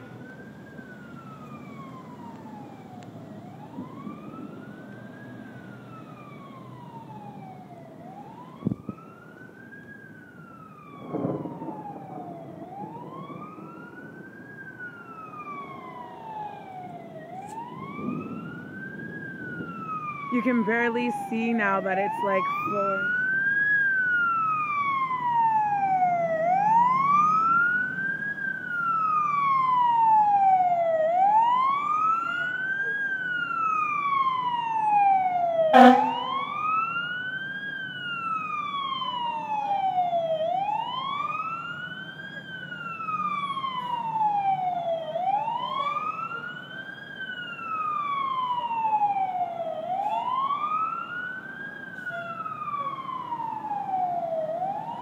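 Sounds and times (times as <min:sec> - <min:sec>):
police siren wailing: 0:00.0 - 0:55.0.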